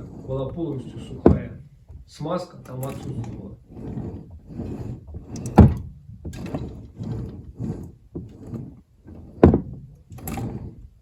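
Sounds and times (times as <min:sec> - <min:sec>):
soft mechanical knocks and rubbing: 0:00.0 - 0:11.0.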